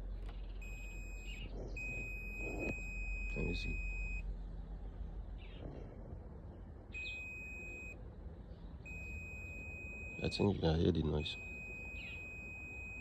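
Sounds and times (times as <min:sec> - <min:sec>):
multimeter continuity beep: 0:00.6 - 0:04.2, 0:07.0 - 0:08.0, 0:08.8 - 0:13.0.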